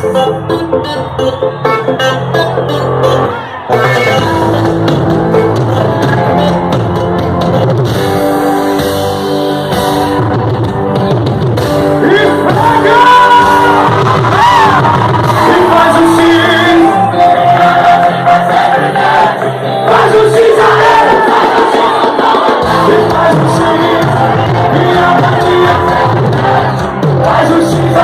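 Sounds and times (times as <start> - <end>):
person singing: 0.0 - 8.1, 14.7 - 28.0
loud live folk dance music: 0.0 - 28.0.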